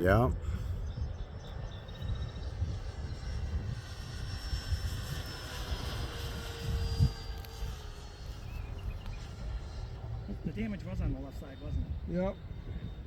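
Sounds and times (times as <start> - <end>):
model plane propeller whining: 0.0 - 13.0
wind buffeting microphone: 0.0 - 13.0.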